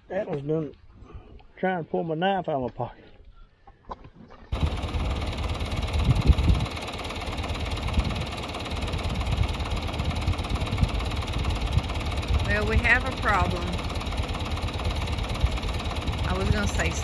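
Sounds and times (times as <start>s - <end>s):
tractor engine idling: 4.5s - 17.0s.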